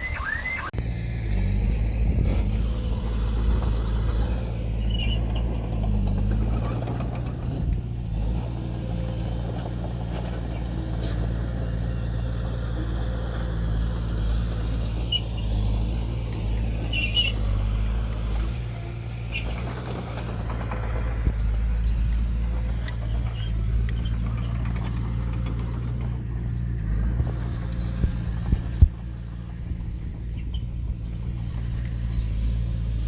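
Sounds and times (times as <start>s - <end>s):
diesel engine running: 0.0s - 33.0s.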